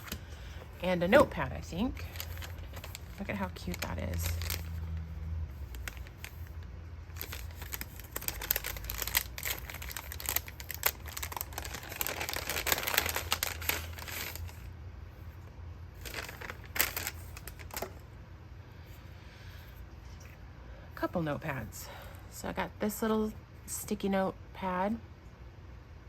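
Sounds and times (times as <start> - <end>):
crinkly packaging rustling: 0.0 - 14.7, 16.0 - 18.1.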